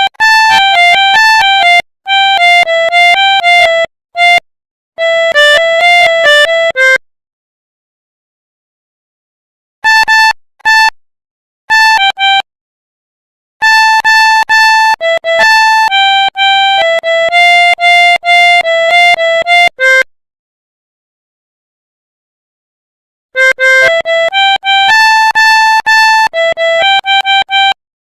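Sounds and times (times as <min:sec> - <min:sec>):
melodica melody: 0:00.0 - 0:04.4, 0:05.0 - 0:07.0, 0:09.8 - 0:11.0, 0:11.7 - 0:12.4, 0:13.6 - 0:20.1, 0:23.4 - 0:27.8.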